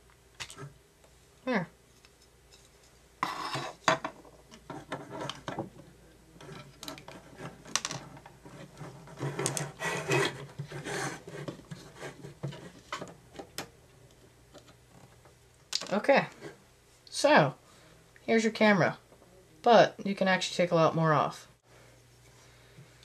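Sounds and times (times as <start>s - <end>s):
plastic parts scraping and rubbing: 2.0s - 5.8s, 6.4s - 15.2s.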